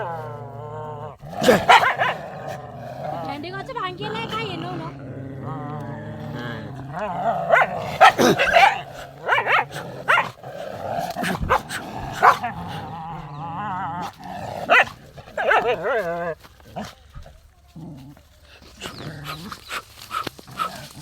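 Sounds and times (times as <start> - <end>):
dogs snarling and growling: 0.0 - 21.0
dogs barking: 1.3 - 4.9, 7.0 - 10.4, 11.0 - 13.3, 14.4 - 16.9
dogs yelping: 1.4 - 2.6, 7.0 - 10.4, 11.0 - 13.4, 14.0 - 16.9.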